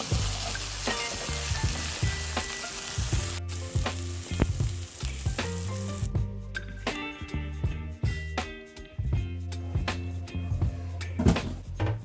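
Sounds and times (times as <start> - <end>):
food sizzling in a frying pan: 0.0 - 6.1
background music with a beat: 0.1 - 12.0.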